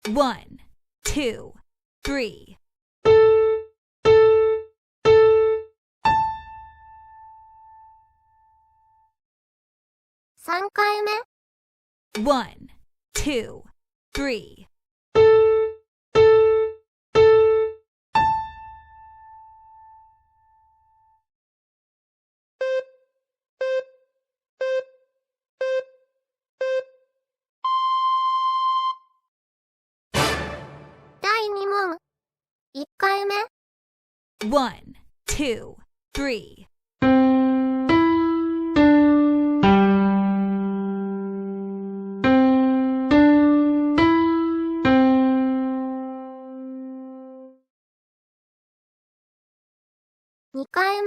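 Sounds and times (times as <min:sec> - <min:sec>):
electronic countdown beeps: 0:22.6 - 0:23.0, 0:23.6 - 0:24.0, 0:24.6 - 0:25.0, 0:25.6 - 0:26.0, 0:26.6 - 0:27.0, 0:27.6 - 0:29.0.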